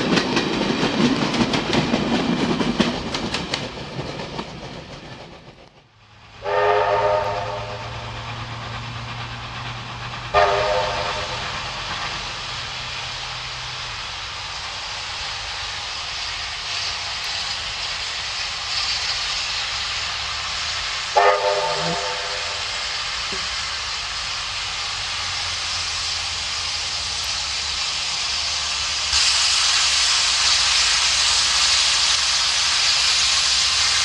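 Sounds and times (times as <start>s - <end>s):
hiss of escaping steam: 6.1s - 34.0s
steam locomotive whistle: 6.4s - 8.1s, 10.3s - 11.6s, 21.1s - 23.1s.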